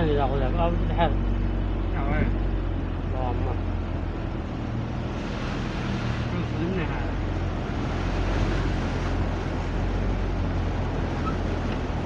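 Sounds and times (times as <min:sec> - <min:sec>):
floodwater rushing: 0:03.3 - 0:12.0.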